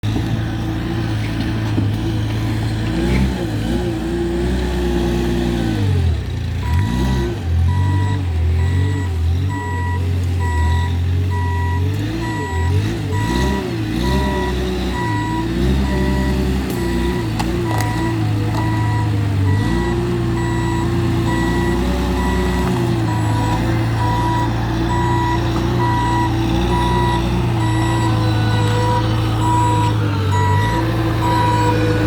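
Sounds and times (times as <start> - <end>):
diesel engine revving: 0.0 - 32.0
reversing alarm beeping: 6.6 - 32.0.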